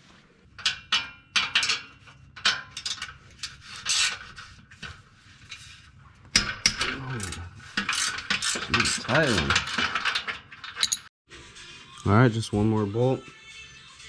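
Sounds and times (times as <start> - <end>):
socket wrench rasping metal: 2.8 - 4.5, 6.4 - 11.0.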